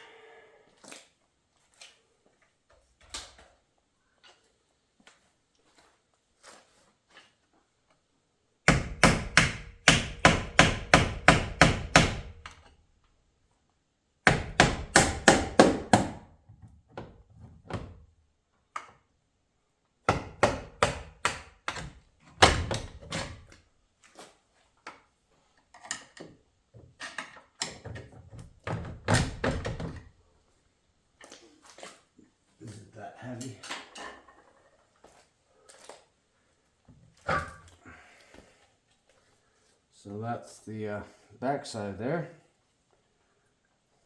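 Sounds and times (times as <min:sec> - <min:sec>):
heavy hammer strikes on metal: 0:08.7 - 0:12.3.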